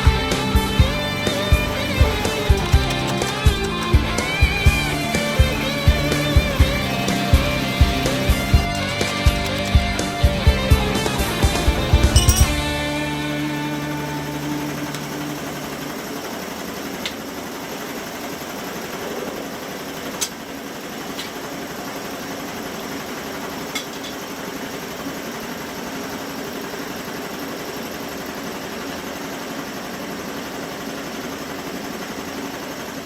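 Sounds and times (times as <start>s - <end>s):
machinery running: 0.0s - 17.4s.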